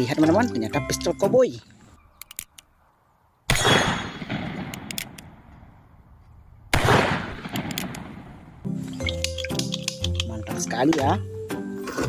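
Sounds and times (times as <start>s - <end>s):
gunshot bang with echo: 3.5s - 4.7s, 6.8s - 8.2s.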